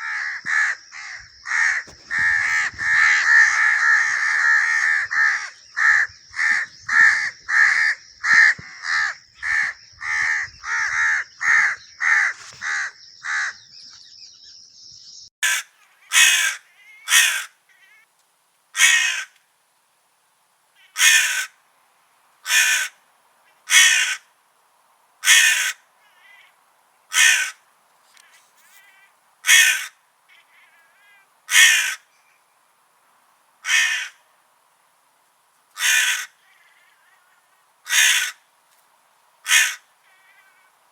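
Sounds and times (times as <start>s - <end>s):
crows cawing: 0.0s - 13.8s, 15.4s - 18.1s, 18.8s - 19.4s, 20.8s - 21.6s, 22.4s - 24.3s, 25.2s - 32.1s, 33.6s - 34.2s, 35.7s - 38.5s, 39.4s - 40.8s.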